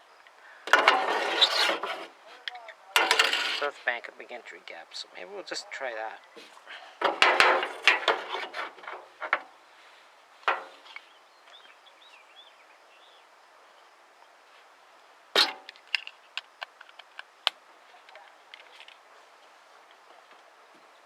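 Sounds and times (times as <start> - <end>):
hard objects knocking and clicking: 0.7 - 3.7, 7.0 - 9.5, 15.4 - 17.3.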